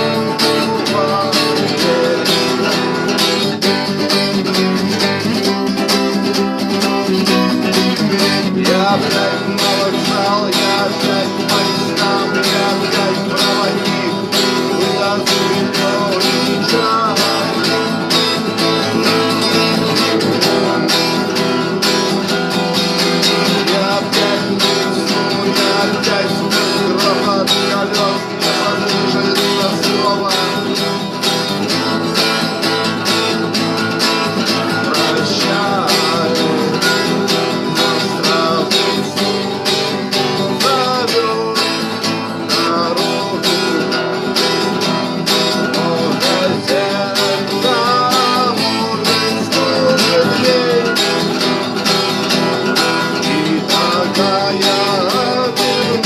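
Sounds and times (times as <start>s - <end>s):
acoustic guitar strumming: 0.0s - 56.0s.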